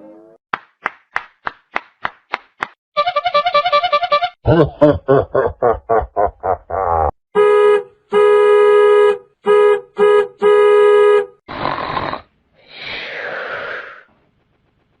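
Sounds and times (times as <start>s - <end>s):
buzzy horn blasts: 3.0s - 4.4s, 7.4s - 11.4s
hissing noises: 12.6s - 15.0s.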